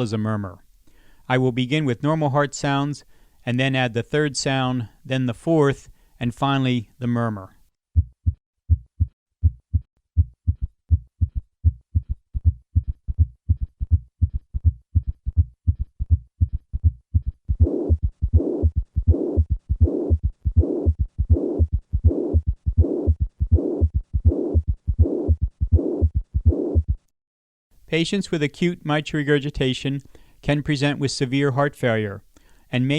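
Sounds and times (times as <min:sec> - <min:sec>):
heart murmur: 0:08.0 - 0:27.1
heartbeat thumps: 0:08.0 - 0:27.1.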